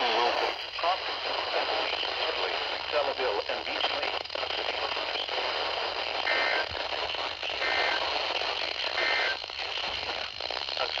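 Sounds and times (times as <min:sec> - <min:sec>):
radio static: 0:00.0 - 0:11.0.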